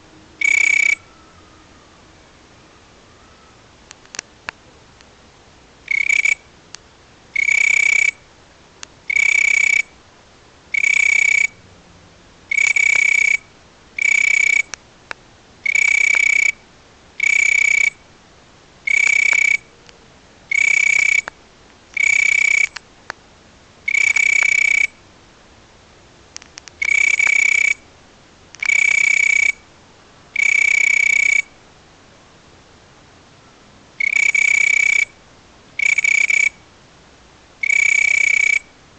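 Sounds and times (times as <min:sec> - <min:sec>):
insect whistling: 0:00.4 - 0:03.7, 0:05.9 - 0:06.5, 0:07.4 - 0:08.2, 0:09.1 - 0:09.9, 0:10.7 - 0:11.6, 0:12.5 - 0:14.8, 0:17.2 - 0:18.0, 0:18.9 - 0:19.7, 0:20.5 - 0:21.3, 0:22.0 - 0:22.8, 0:23.9 - 0:25.0, 0:26.8 - 0:27.8, 0:28.6 - 0:29.6, 0:30.4 - 0:31.6, 0:34.0 - 0:35.2, 0:35.8 - 0:36.6, 0:37.6 - 0:38.8.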